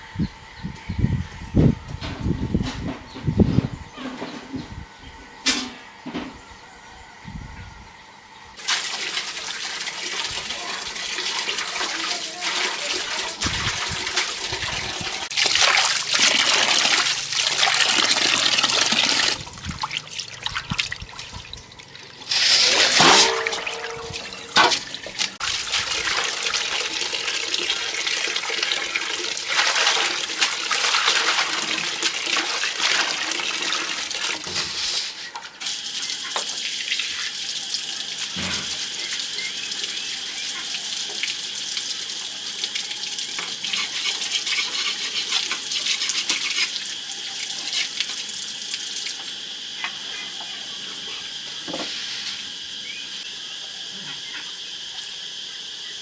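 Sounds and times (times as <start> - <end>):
water splashing and running: 8.6 - 49.4
crickets droning: 46.8 - 56.0.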